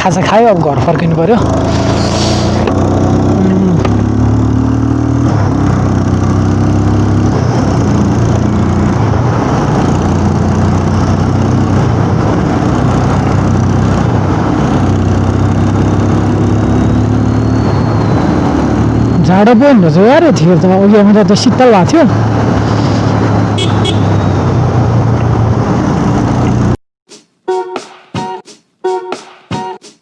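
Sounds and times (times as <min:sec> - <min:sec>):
steady rushing noise: 0:01.3 - 0:03.3.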